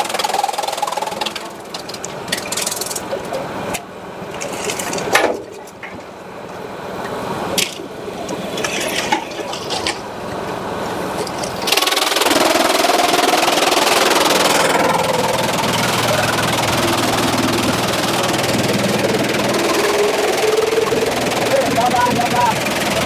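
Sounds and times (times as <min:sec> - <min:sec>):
machine running: 0:00.0 - 0:23.0
saw cutting log with whine: 0:00.0 - 0:23.0.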